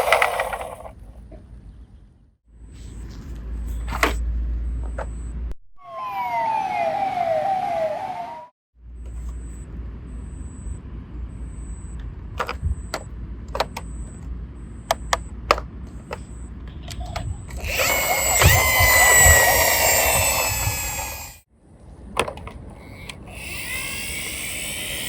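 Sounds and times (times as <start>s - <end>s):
plastic rattling and whirring: 0.0s - 1.0s, 12.4s - 13.9s, 16.9s - 21.4s
plastic toy clicks and knocks: 12.4s - 13.9s, 22.2s - 23.2s.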